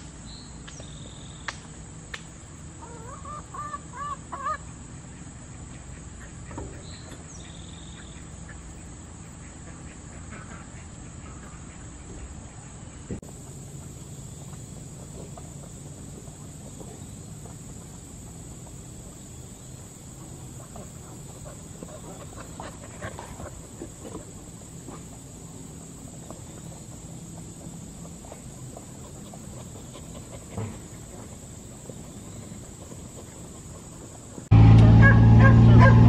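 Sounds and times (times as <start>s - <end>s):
high insect drone: 13.2s - 32.4s
low steady hum: 33.1s - 36.0s.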